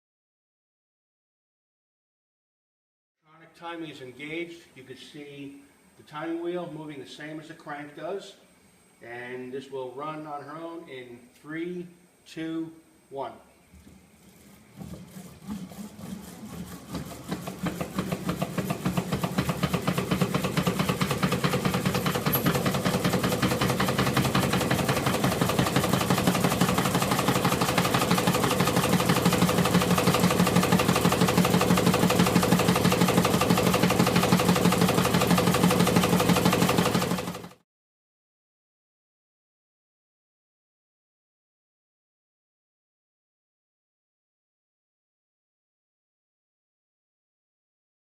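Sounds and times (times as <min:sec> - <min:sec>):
motor running with rapid clicking: 0:13.7 - 0:37.6.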